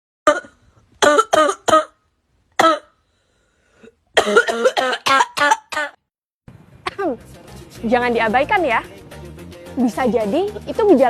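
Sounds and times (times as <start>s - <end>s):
person coughing: 0.3s - 1.9s, 2.6s - 3.0s, 3.8s - 6.0s.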